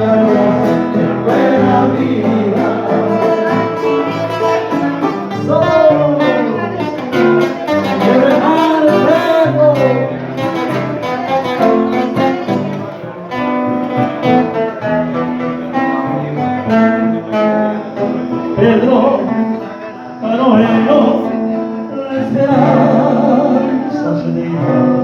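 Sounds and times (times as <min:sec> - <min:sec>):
sliding lead melody: 0:00.0 - 0:19.5
guitar accompaniment: 0:00.0 - 0:25.0.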